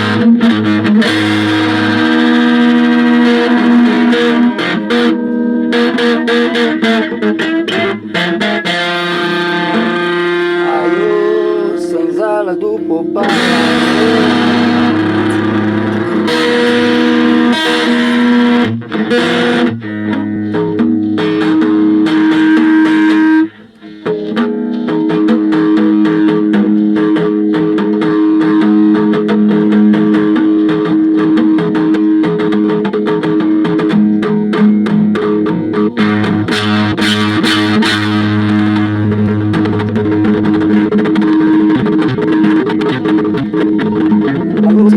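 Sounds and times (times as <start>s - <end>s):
distorted electric guitar: 0.0s - 44.9s.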